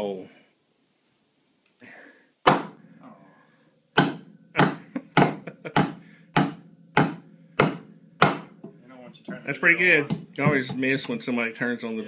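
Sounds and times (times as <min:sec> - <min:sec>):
hammer driving nail into wood: 0:02.4 - 0:02.8, 0:04.0 - 0:08.7.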